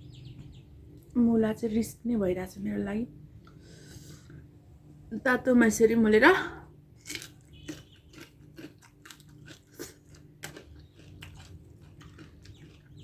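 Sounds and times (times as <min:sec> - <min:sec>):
person chewing with crunches: 0:07.0 - 0:13.0.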